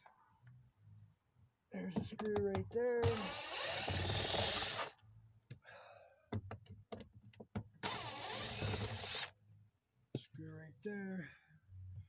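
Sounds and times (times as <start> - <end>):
cordless screw gun running: 3.0 - 4.9, 7.8 - 9.3.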